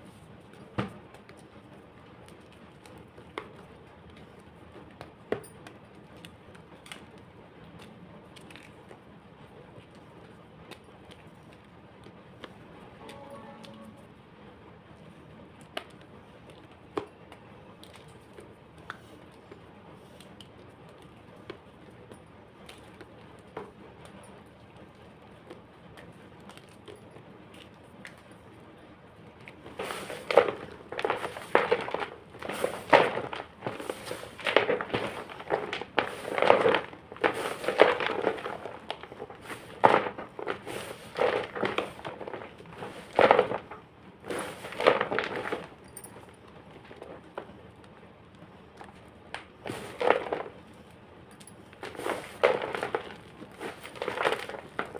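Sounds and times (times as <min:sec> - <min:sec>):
chalk crunching: 0:29.5 - 0:45.8, 0:51.8 - 0:54.9.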